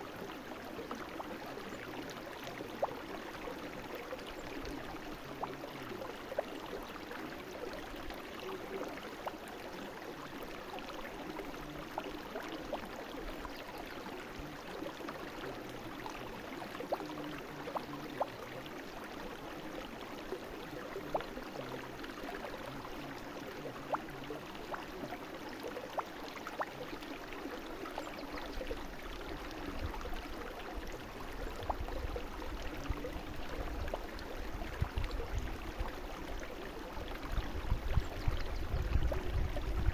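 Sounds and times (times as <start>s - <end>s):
brook babbling: 0.0s - 39.9s.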